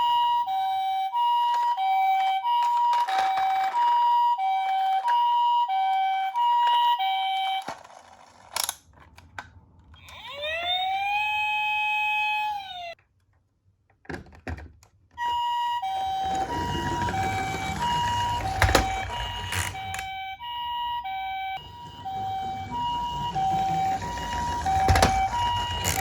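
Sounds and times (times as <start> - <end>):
toy two-tone siren: 0.0 - 8.8, 9.9 - 13.0, 15.2 - 26.0.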